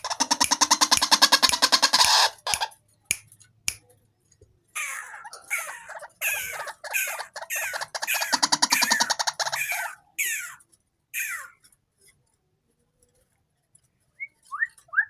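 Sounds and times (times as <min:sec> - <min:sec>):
bird rattling calls: 0:00.0 - 0:02.8, 0:04.8 - 0:10.6, 0:11.2 - 0:11.6
bird sharp clicks: 0:00.0 - 0:03.8.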